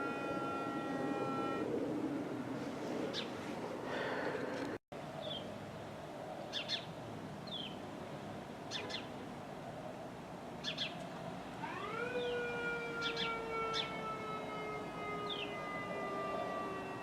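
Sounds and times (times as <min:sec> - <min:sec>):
birds chirping: 0:03.1 - 0:05.5, 0:06.4 - 0:07.8, 0:08.7 - 0:09.2, 0:10.6 - 0:11.1, 0:12.0 - 0:17.0
siren winding up: 0:11.6 - 0:17.0.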